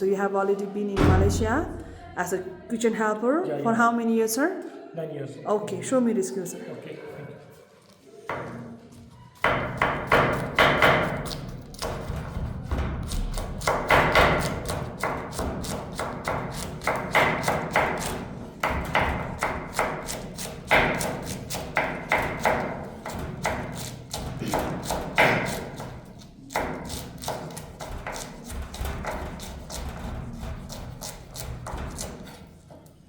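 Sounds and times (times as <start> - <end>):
knife chopping on cutting board: 9.4 - 32.4.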